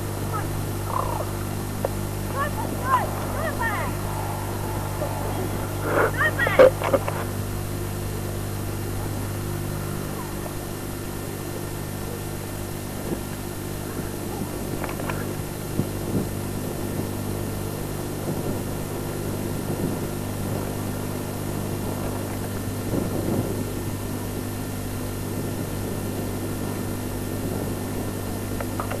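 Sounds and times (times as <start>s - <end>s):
faint distant voices: 0.0s - 7.4s
low mechanical hum: 0.0s - 29.0s.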